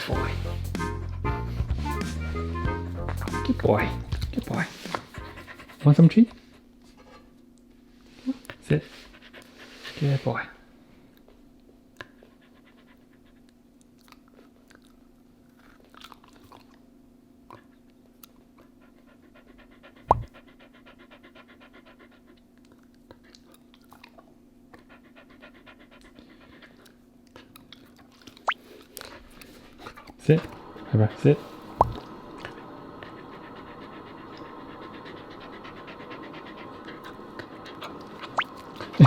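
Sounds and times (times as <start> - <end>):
dog panting: 0.0 - 2.0, 2.7 - 7.3, 8.1 - 11.2, 12.0 - 14.8, 18.4 - 39.0
dog chewing: 12.0 - 16.8.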